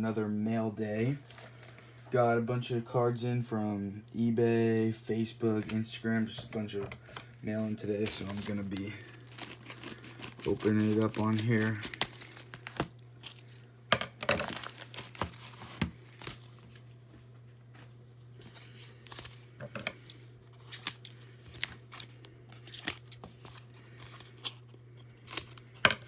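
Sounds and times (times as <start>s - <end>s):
paper envelopes tearing: 7.6s - 16.9s, 18.4s - 26.0s.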